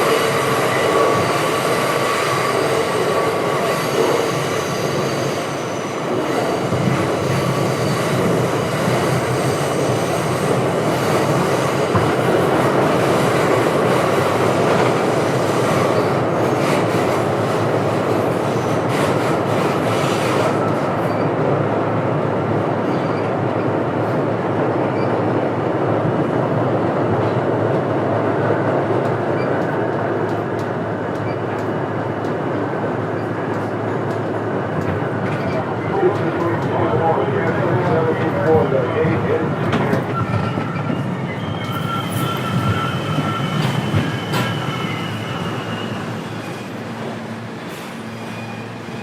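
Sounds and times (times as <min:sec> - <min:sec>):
subway train rail noise: 0:00.0 - 0:49.0.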